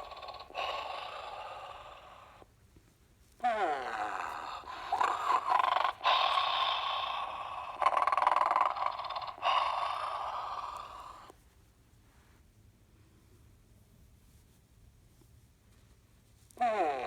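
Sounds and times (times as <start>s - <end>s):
toy recorded snoring: 0.0s - 2.5s, 3.4s - 11.3s, 16.6s - 17.0s.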